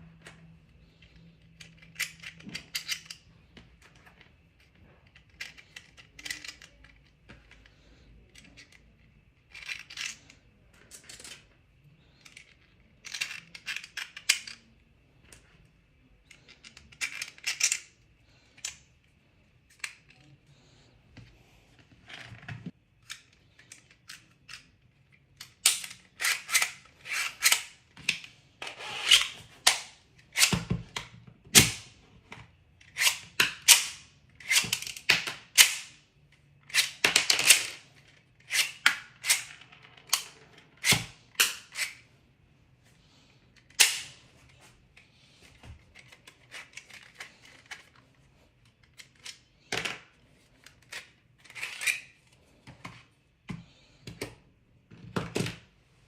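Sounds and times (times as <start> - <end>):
plastic toy parts clicking: 0.8 - 3.3, 4.6 - 7.4, 8.2 - 11.4, 12.1 - 15.4, 16.2 - 18.9, 23.0 - 28.3, 48.6 - 52.1.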